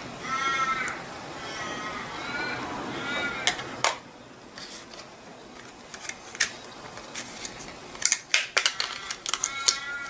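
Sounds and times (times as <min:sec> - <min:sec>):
sharp plastic clicks: 0:05.6 - 0:10.0.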